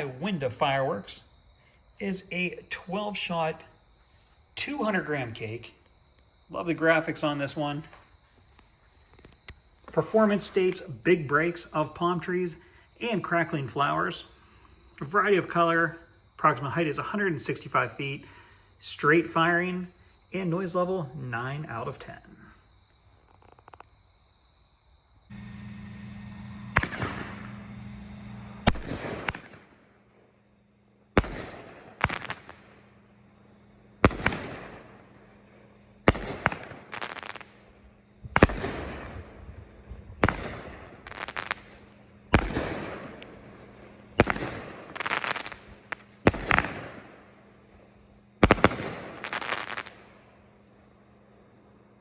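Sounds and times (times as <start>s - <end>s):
firework reports: 0.0s - 1.4s, 2.0s - 3.9s, 4.5s - 5.8s, 6.5s - 8.1s, 9.7s - 22.5s, 25.3s - 50.4s
firework crackling: 9.8s - 11.7s, 25.3s - 30.3s, 31.1s - 47.7s, 48.4s - 50.3s.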